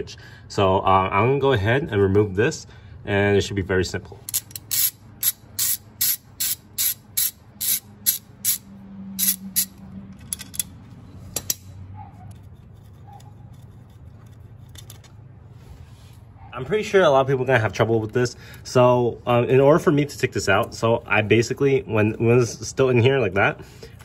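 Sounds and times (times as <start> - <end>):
ratchet wrench clicking: 4.2 - 10.8
tool handling: 9.2 - 11.7.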